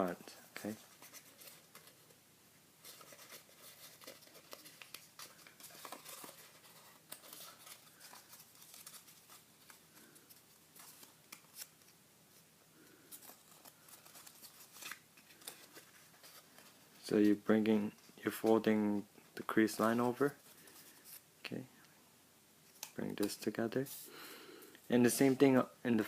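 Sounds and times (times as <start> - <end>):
paper crinkling and creasing: 2.8 - 18.8.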